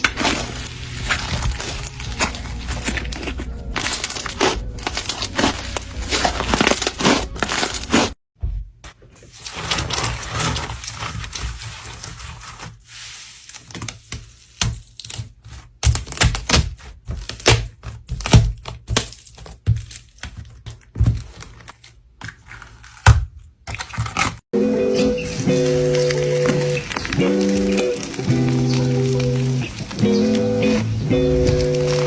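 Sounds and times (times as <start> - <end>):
slime crackling and popping: 0.0 - 8.2, 24.9 - 32.0.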